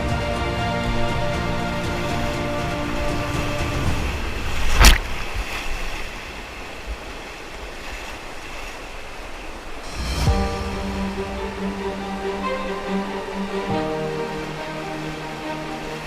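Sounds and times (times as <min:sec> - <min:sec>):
rushing whitewater: 0:00.0 - 0:16.0
sharp loud hit: 0:09.8 - 0:14.0.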